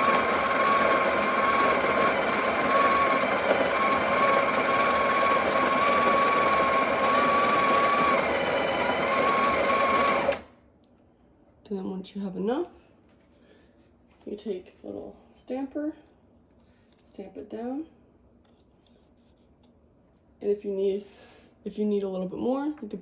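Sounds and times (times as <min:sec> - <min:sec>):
coffee grinder whining: 0:00.0 - 0:10.5.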